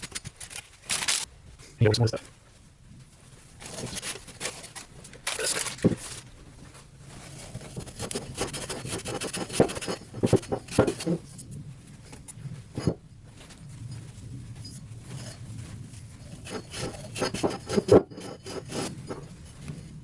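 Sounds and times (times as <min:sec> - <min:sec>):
parts knocking and rattling: 0:07.5 - 0:20.0.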